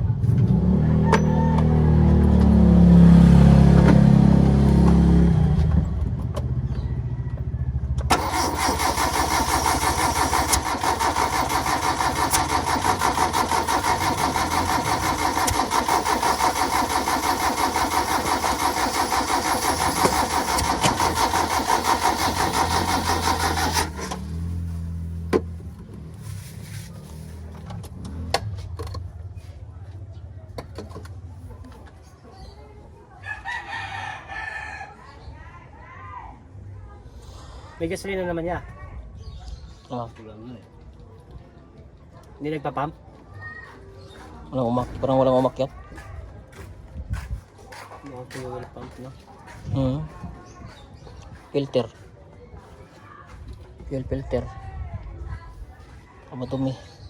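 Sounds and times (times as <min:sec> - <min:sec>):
starter motor cranking engine: 0:08.0 - 0:26.0.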